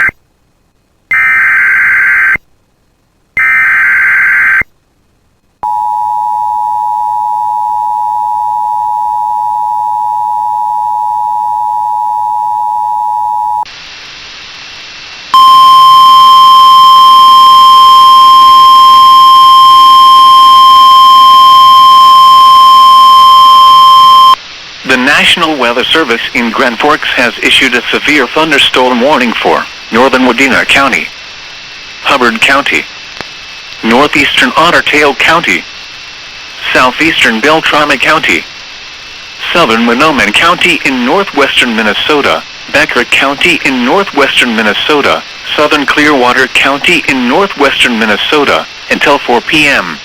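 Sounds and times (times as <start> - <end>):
loud single-pitch alert tone: 1.1 - 2.4, 3.4 - 4.7, 15.4 - 24.4
steady two-tone attention signal: 3.4 - 4.7, 5.6 - 13.7, 15.3 - 24.4.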